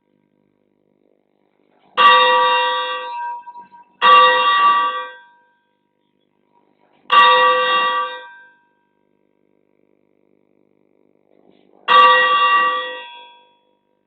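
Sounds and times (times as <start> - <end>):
church bell ringing: 2.0 - 5.6, 7.1 - 8.8, 11.9 - 13.7.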